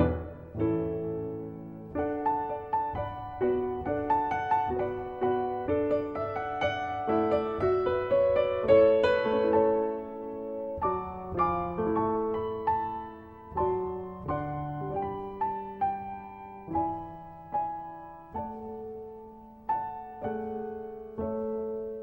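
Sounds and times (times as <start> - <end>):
soft slow piano: 0.0 - 22.0.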